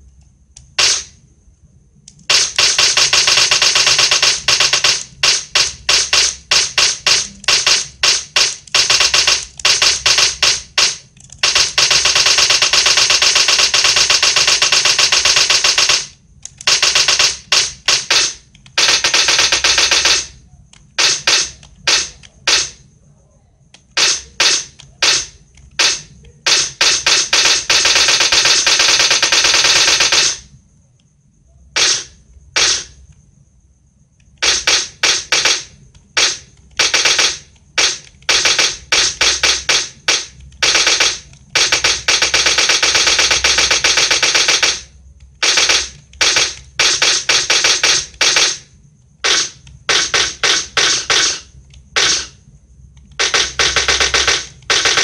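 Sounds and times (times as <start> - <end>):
machine gun firing: 0.8 - 1.2, 2.2 - 22.8, 23.9 - 30.5, 31.8 - 33.0, 34.4 - 52.4, 53.1 - 55.0
single gunshots: 0.8 - 1.2, 21.0 - 22.8, 23.9 - 30.4, 31.8 - 33.0.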